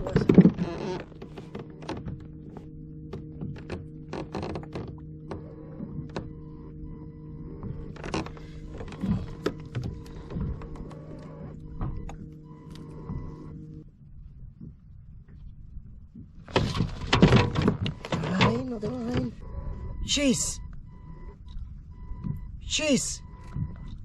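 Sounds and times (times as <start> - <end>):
knocks and clicks of gear: 0.0 - 13.8, 16.2 - 19.4, 20.7 - 22.6
steady low hum: 0.0 - 24.0.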